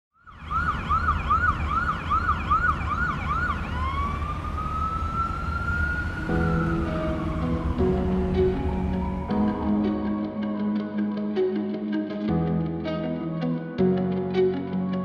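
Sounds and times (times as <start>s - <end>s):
emergency vehicle siren: 0.1s - 11.8s
steady low rumble: 4.1s - 10.1s
music notes: 6.0s - 15.0s.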